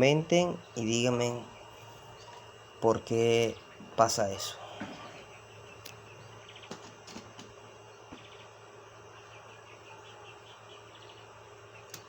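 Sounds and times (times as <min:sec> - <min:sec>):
quail trilling chirrs: 0:03.4 - 0:12.0.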